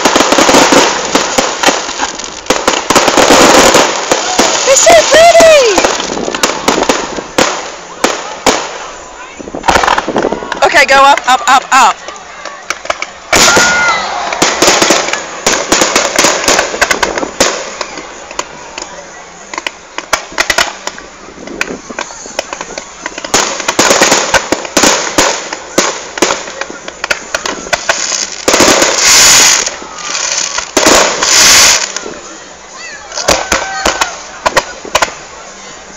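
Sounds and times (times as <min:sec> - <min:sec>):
fireworks bangs: 0:00.0 - 0:35.9
fireworks crackling: 0:00.0 - 0:35.9.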